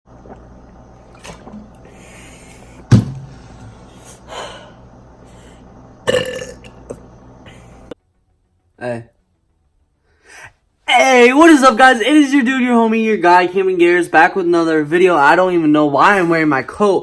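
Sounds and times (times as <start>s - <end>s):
person burping: 6.0s - 7.0s.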